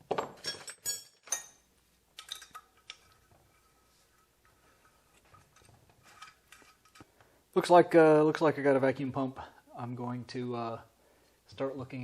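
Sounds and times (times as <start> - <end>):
metallic clinks: 0.4 - 3.3.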